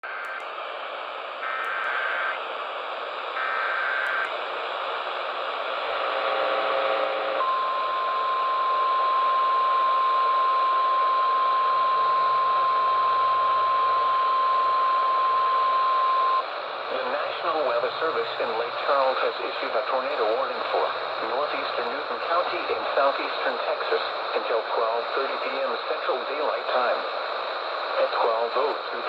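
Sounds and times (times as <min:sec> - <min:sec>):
radio static hiss: 0:00.0 - 0:07.5, 0:08.1 - 0:29.0
single-pitch warning alarm tone: 0:07.4 - 0:16.4.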